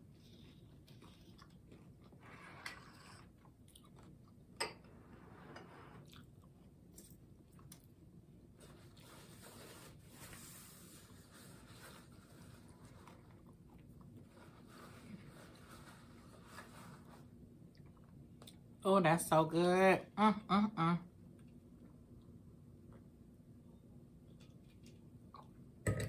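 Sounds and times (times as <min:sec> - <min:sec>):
person chewing crunchy food: 0:00.1 - 0:04.5.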